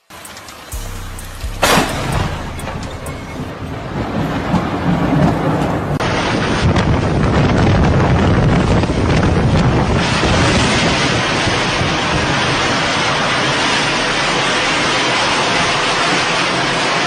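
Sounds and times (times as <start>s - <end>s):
wind buffeting microphone: 3.5s - 13.3s.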